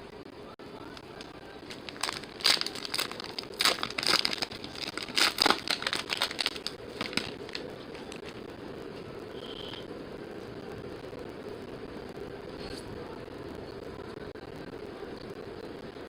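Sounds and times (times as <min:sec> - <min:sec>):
card pack wrappers crinkling: 0:00.8 - 0:08.4.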